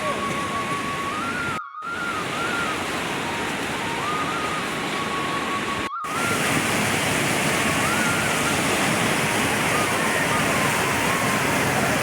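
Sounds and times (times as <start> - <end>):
faint wavering high tone: 0.0 - 6.6, 7.7 - 12.0
steady rushing noise: 6.1 - 12.0.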